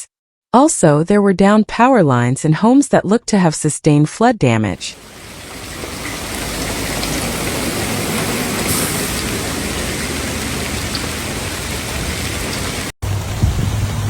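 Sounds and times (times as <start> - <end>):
heavy rain pouring: 4.8 - 14.0.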